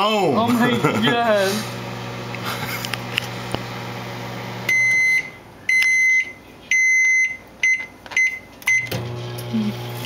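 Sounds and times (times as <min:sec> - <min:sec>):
microwave oven humming: 0:01.7 - 0:05.4, 0:08.6 - 0:10.0
microwave end-of-cycle beeps: 0:04.5 - 0:09.5.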